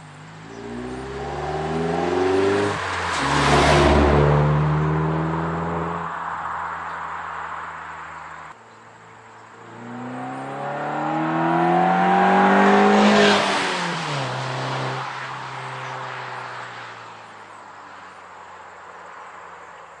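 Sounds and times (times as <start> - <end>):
car engine accelerating past: 0.4 - 6.1, 9.6 - 17.0.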